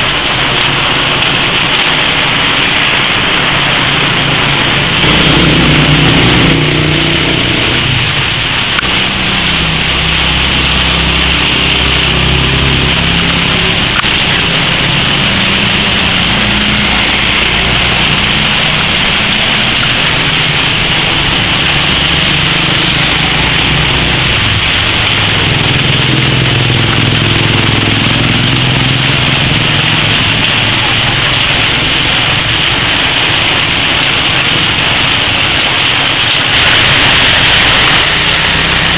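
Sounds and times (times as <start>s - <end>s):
loud steady hiss: 1.9s - 27.5s, 28.3s - 38.9s
small engines running and passing: 4.4s - 7.8s.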